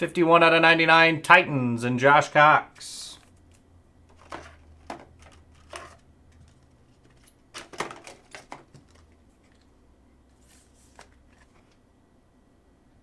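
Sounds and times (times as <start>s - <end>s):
faint low hum: 0.0s - 13.0s
trading cards sliding together: 10.4s - 11.8s.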